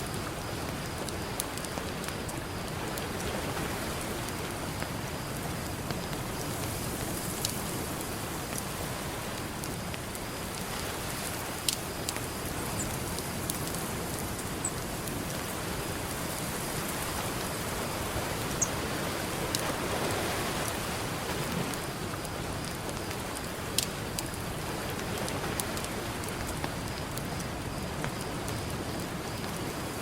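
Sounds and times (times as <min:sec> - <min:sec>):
campfire crackling and popping: 0:00.0 - 0:30.0
ocean surf: 0:06.2 - 0:27.4.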